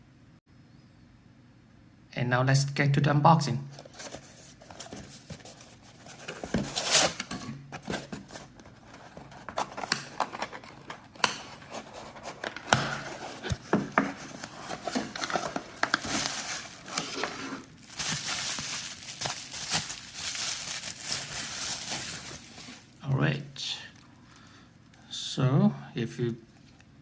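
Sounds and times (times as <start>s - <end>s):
plastic and paper crinkling: 3.7s - 23.1s.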